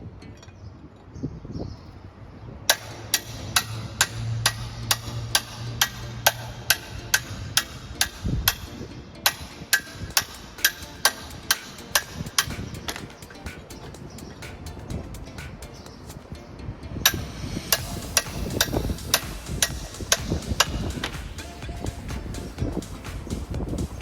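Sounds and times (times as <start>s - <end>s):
sharp hammer blows: 2.7s - 16.2s, 17.0s - 23.6s
low hum: 9.7s - 24.0s.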